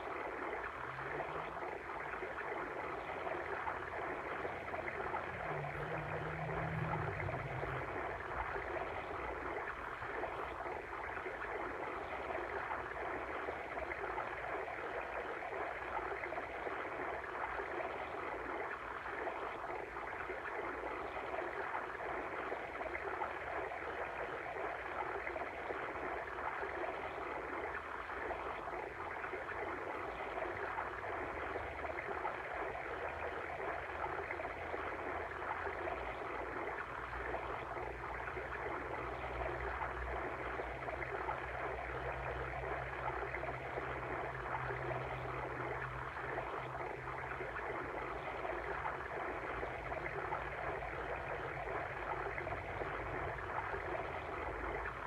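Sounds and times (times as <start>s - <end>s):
stream water rushing: 0.0s - 10.5s
low hum: 0.0s - 13.1s.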